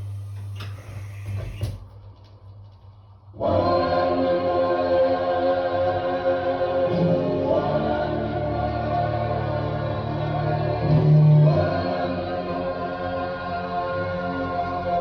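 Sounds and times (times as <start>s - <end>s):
choir holding a chord: 3.4s - 15.0s.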